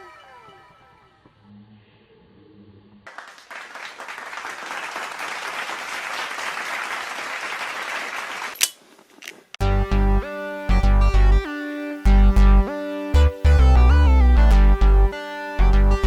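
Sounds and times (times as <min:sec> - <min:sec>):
applause: 0:03.1 - 0:08.6.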